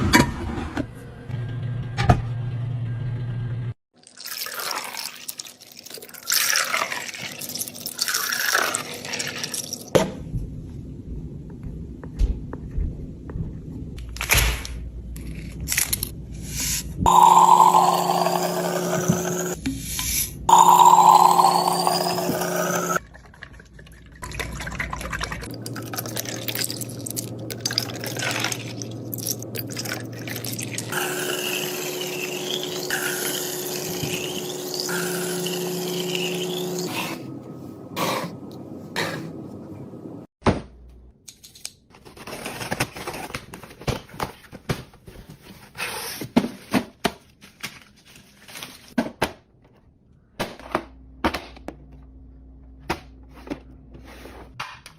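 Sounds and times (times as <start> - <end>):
liquid being poured: 4.0 - 9.7, 20.5 - 36.9.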